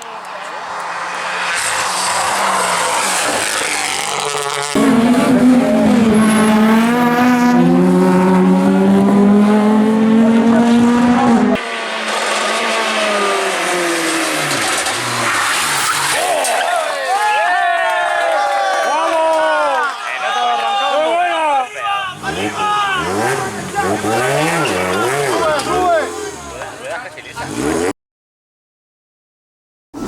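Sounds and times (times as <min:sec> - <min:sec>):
rally car engines revving high: 0:00.0 - 0:16.6, 0:22.1 - 0:27.9.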